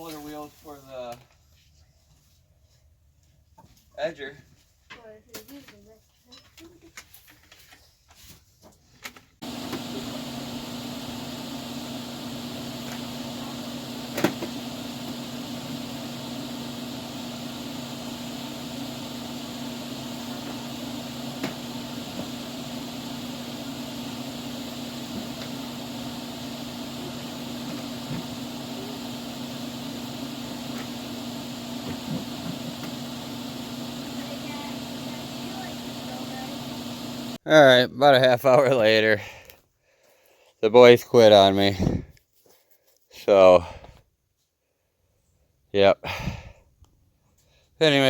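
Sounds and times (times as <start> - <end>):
engine humming: 9.4 - 37.4.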